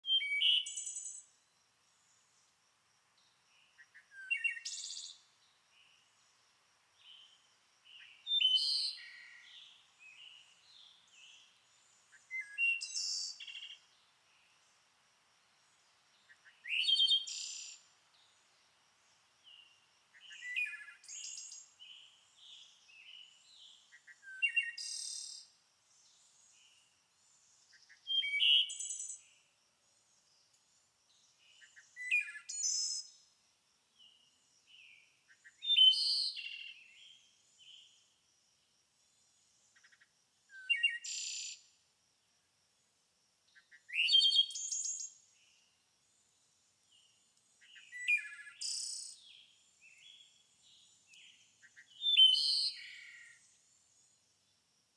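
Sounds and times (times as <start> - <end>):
soft bird chirps: 3.3 - 6.4, 7.0 - 14.6, 19.4 - 29.5, 30.1 - 33.2, 46.9 - 54.2.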